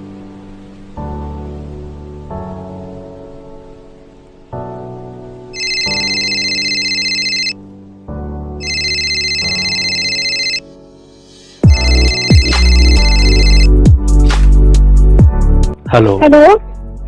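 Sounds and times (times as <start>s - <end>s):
soft background music: 0.0s - 17.0s
telephone ringtone trilling: 5.6s - 7.6s, 8.6s - 10.6s, 11.7s - 13.7s
beat-heavy electronic music: 11.6s - 15.7s.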